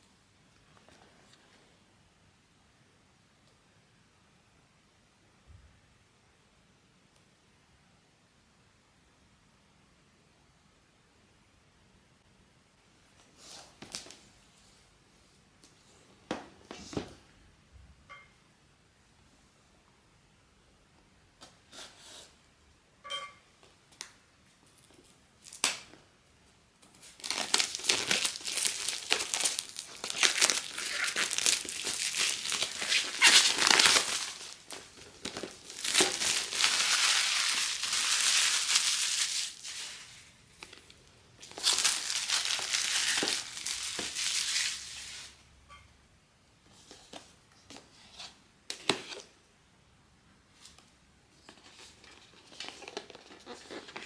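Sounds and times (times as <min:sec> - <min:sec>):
wrapper crinkling and tearing: 0:26.9 - 0:45.3, 0:51.6 - 0:54.0.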